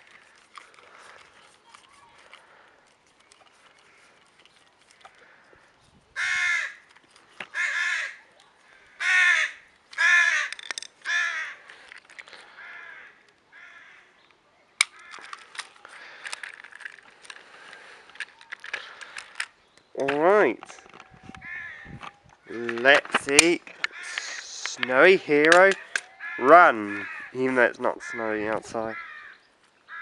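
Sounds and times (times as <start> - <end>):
crow cawing: 6.2 - 6.9, 7.5 - 11.8, 12.4 - 14.2, 14.9 - 15.5, 21.3 - 22.1, 23.7 - 24.6, 25.6 - 30.0.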